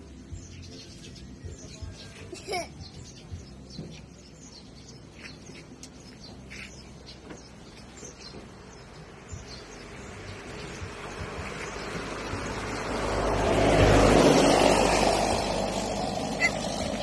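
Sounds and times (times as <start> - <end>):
birds chirping: 0.0 - 17.0
motor vehicle approaching: 3.0 - 17.0.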